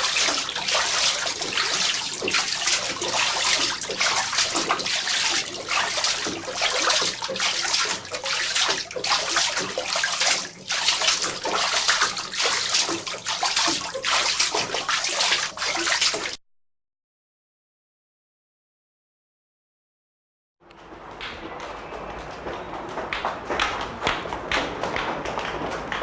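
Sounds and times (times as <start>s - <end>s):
footsteps splashing through water: 0.0s - 16.4s.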